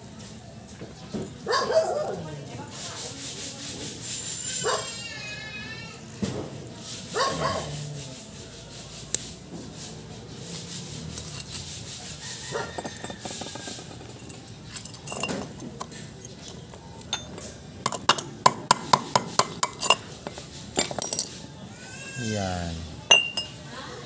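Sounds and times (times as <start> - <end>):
metal parts rubbing and tapping: 6.8 - 21.6, 23.1 - 23.6
sharp metallic clinks: 12.8 - 18.4, 20.7 - 21.4, 23.1 - 23.6.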